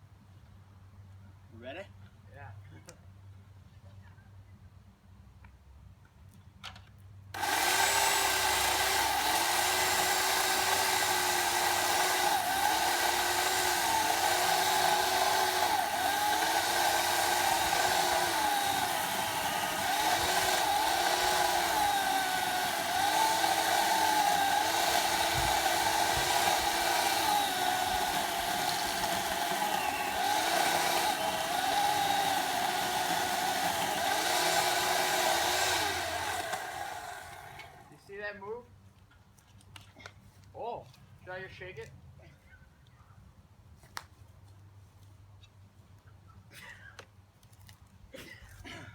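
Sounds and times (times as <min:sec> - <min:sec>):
chainsaw cutting into log: 0:07.4 - 0:38.0.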